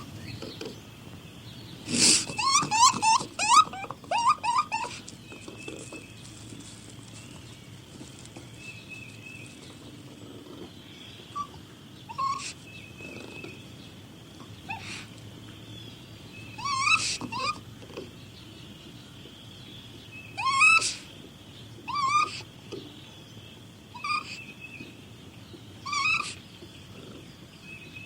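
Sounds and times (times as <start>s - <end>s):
raccoon crying: 1.8s - 6.0s, 10.3s - 13.6s, 14.4s - 15.2s, 16.5s - 18.1s, 20.3s - 21.1s, 21.8s - 22.8s, 23.9s - 24.6s, 25.8s - 27.2s.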